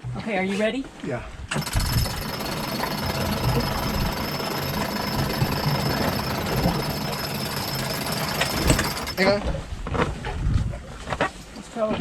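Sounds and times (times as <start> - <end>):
winch cranking rattle: 1.5 - 9.4.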